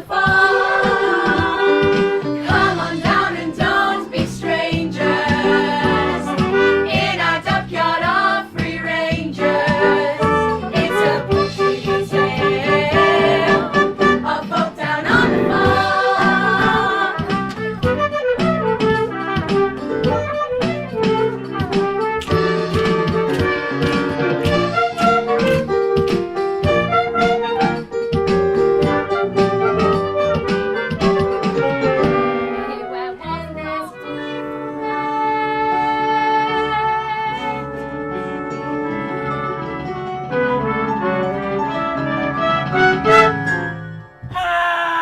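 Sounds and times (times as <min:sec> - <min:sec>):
live band playing instrumental music: 0:15.1 - 0:32.8.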